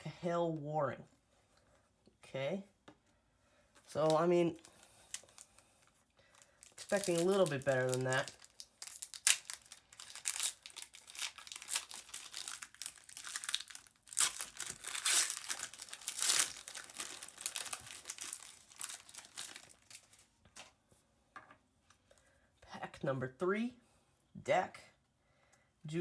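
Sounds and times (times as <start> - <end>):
foil wrapper crinkling and tearing: 3.8 - 20.3.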